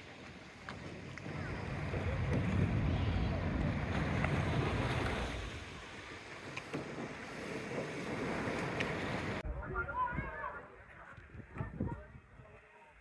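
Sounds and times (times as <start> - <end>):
water lapping and splashing: 0.0 - 9.4
wind buffeting microphone: 0.6 - 12.6.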